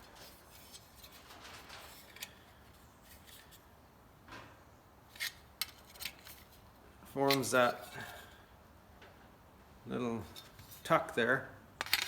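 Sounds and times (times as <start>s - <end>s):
metal tool clicking and scraping: 7.2s - 8.1s.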